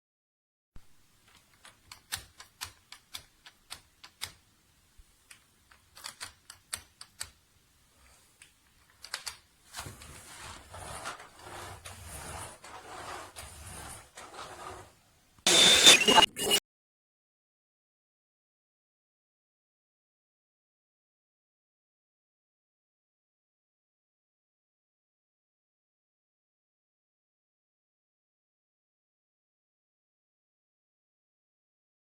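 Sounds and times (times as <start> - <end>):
sharp clicks and taps: 1.3 - 4.4, 5.3 - 7.4.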